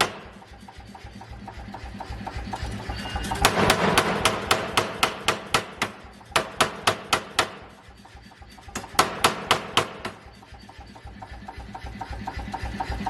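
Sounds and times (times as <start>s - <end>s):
air hammer striking: 0.0s - 0.5s, 2.6s - 7.8s, 8.7s - 10.4s
steady low hum: 0.0s - 13.0s.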